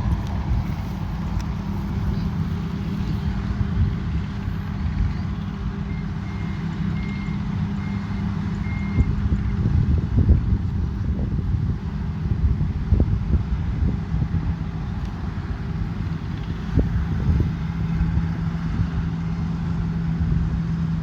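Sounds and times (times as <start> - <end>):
diesel engine running: 0.0 - 21.0
reversing alarm beeps: 5.8 - 9.6.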